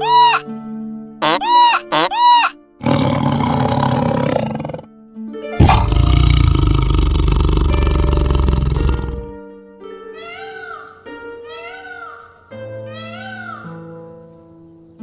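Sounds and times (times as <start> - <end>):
animal calls: 0.0 - 0.5, 1.2 - 4.9, 5.6 - 9.4.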